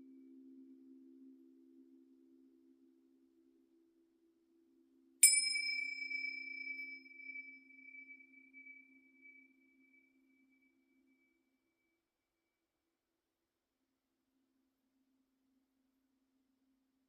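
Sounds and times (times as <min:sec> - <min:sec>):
small metal chime ringing: 0:05.2 - 0:08.2.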